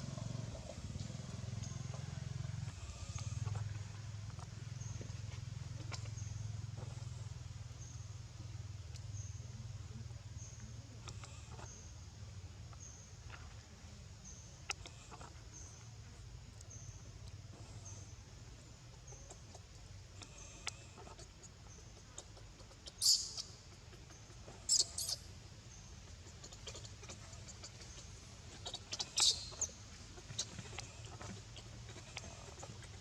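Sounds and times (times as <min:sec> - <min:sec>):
low steady hum: 0:00.0 - 0:33.0
baby monkey squeaking: 0:22.9 - 0:23.5, 0:24.6 - 0:25.2, 0:28.6 - 0:29.7.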